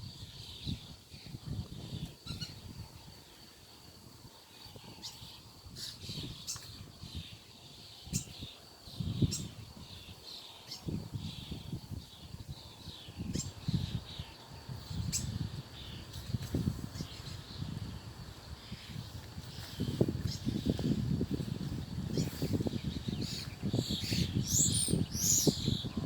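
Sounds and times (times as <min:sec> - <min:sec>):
birds chirping and calling: 0:00.2 - 0:03.0, 0:04.6 - 0:26.0
low rumbles on microphone: 0:14.6 - 0:26.0.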